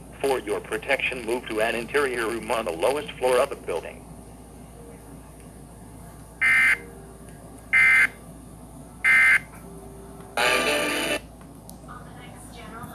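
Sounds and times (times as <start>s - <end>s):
electronic tone: 9.1s - 9.4s, 10.4s - 11.2s.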